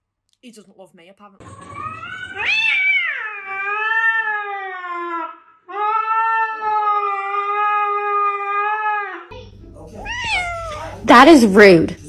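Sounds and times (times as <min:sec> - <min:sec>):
cat yowling: 0:01.6 - 0:09.3, 0:10.0 - 0:11.0.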